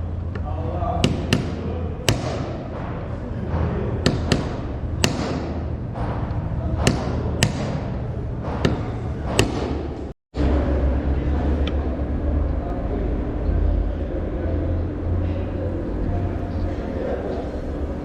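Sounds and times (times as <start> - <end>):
steady low hum: 0.0 - 18.0
knocks and clicks on metal: 1.0 - 9.9.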